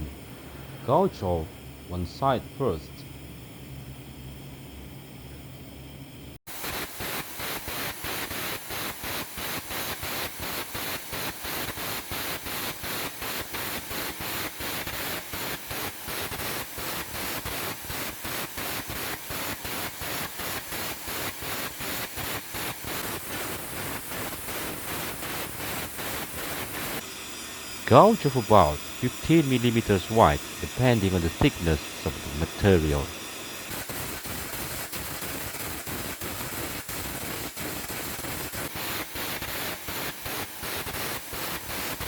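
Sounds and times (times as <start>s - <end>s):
air jet hissing: 22.6s - 40.4s.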